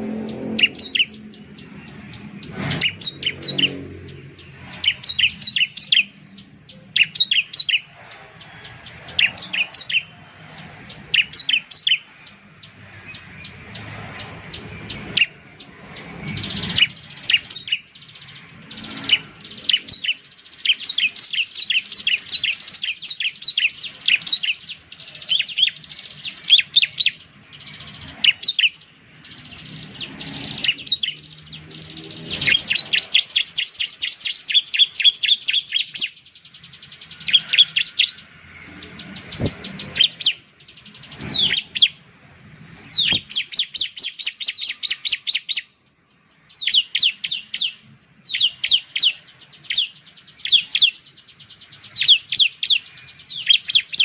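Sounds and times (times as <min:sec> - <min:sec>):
bird singing high chirping notes: 0:00.0 - 0:42.1, 0:42.7 - 0:54.0.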